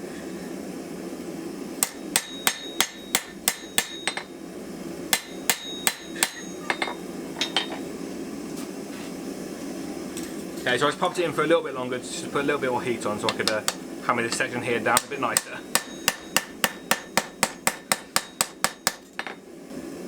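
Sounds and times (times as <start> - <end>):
hammer striking steel on anvil: 1.8 - 4.4, 5.1 - 7.9, 13.3 - 19.4.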